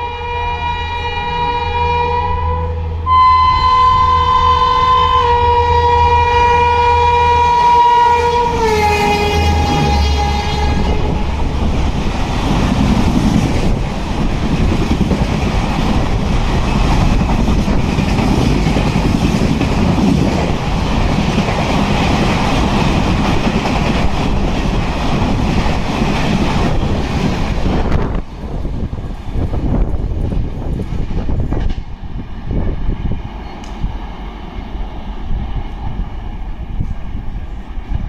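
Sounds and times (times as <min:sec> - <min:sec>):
train horn: 0:00.0 - 0:11.4
train wheels clattering on rails: 0:10.7 - 0:34.8.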